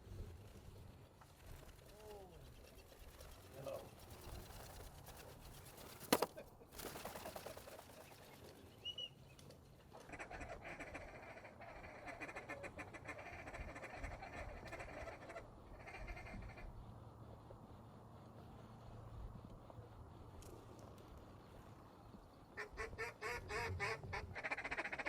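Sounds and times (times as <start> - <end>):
ducks quacking: 10.0 - 16.8, 22.6 - 25.0.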